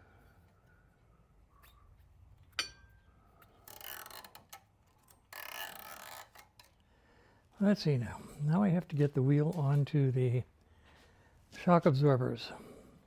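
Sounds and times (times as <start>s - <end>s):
sharp metallic clink: 2.6s - 3.0s.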